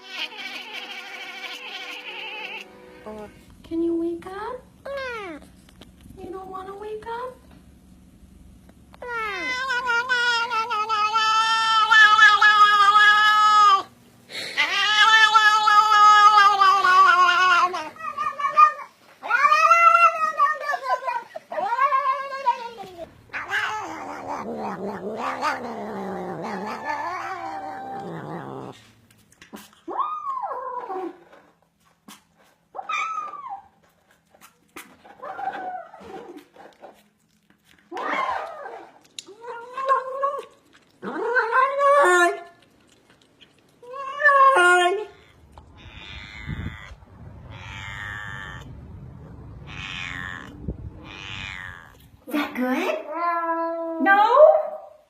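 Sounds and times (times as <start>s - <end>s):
cat yowling: 0.0s - 2.7s, 9.0s - 13.9s, 14.5s - 28.7s, 43.8s - 52.2s.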